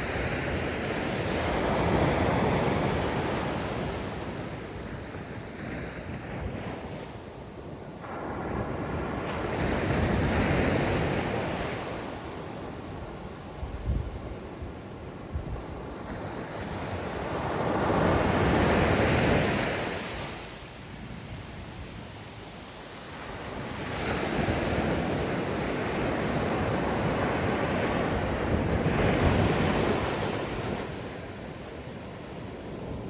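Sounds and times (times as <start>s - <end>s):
wind rumbling on microphone: 0.0s - 33.0s.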